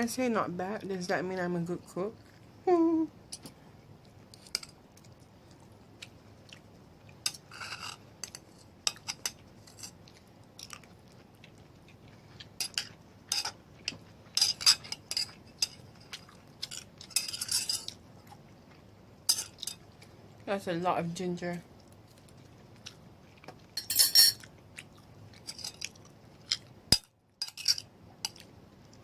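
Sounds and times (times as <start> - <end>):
person chewing: 3.4 - 17.2, 21.8 - 23.8, 24.4 - 26.8
cutlery clinking on a plate: 23.8 - 24.5.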